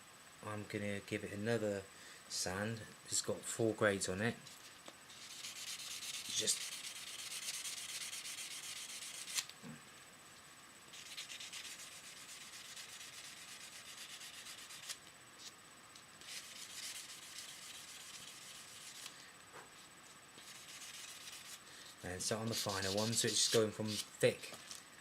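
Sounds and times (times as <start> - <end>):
scratchy hand sanding: 5.1 - 9.4, 11.0 - 15.0, 16.2 - 19.1, 20.4 - 21.6, 22.3 - 24.1.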